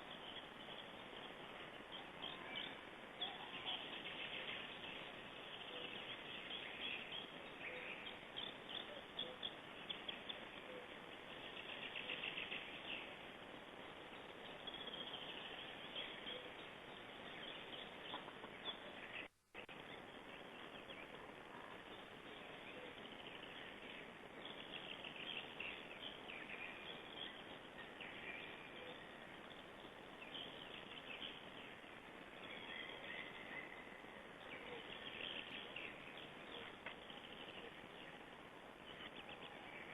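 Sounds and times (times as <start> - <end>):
small birds chirping: 0.0 - 39.9
steady background hiss: 0.0 - 39.9.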